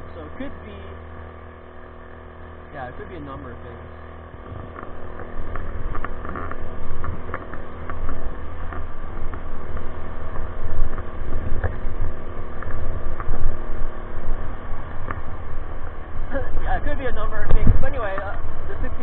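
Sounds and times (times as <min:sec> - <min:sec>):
small generator engine running: 0:00.0 - 0:19.0
wind buffeting microphone: 0:04.3 - 0:19.0.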